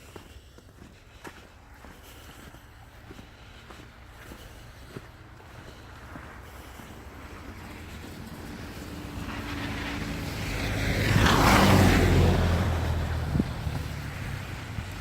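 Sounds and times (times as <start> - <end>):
vehicle driving past: 6.2 - 15.0.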